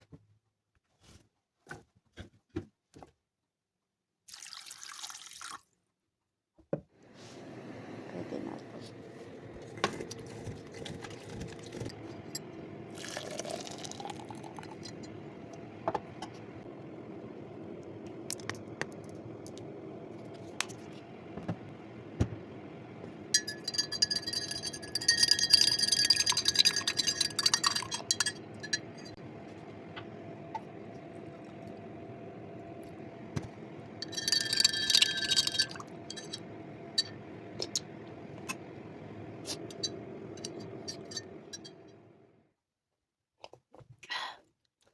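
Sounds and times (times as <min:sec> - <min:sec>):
liquid pouring: 0:04.3 - 0:05.7, 0:09.2 - 0:21.5, 0:23.1 - 0:38.7
spoon clinking against glass: 0:12.0 - 0:15.2, 0:23.4 - 0:29.2, 0:34.0 - 0:37.9, 0:39.6 - 0:41.9
utensils knocking: 0:23.4 - 0:29.2, 0:33.4 - 0:38.0, 0:39.6 - 0:41.9.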